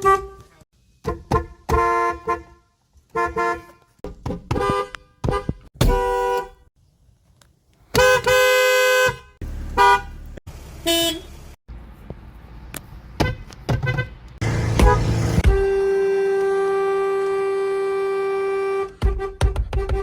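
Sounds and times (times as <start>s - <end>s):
two-note car horns: 13.9s - 20.0s.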